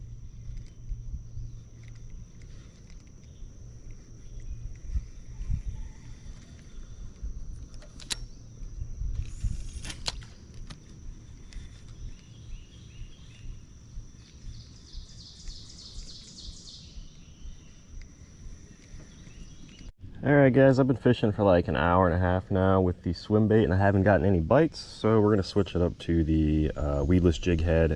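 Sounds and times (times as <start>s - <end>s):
low rumble: 0.0s - 18.6s
steady high whine: 0.0s - 27.9s
bird chirping: 11.5s - 19.9s.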